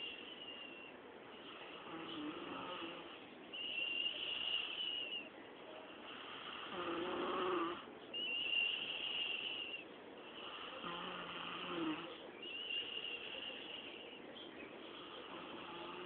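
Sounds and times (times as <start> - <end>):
woman snoring: 1.7 - 3.2, 6.2 - 7.8, 10.4 - 12.1, 15.0 - 16.0.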